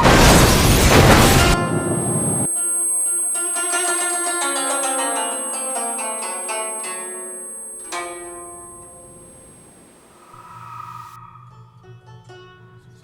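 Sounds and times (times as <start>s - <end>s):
high-pitched ringing tone: 0.0s - 11.2s
plucked string notes: 1.2s - 9.9s.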